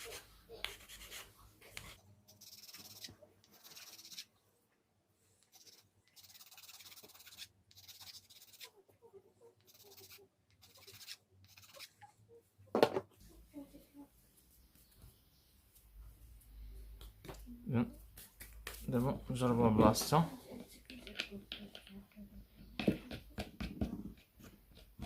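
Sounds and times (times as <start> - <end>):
small parts rubbing and scraping: 0.0 - 4.3, 5.4 - 8.8, 9.6 - 12.1.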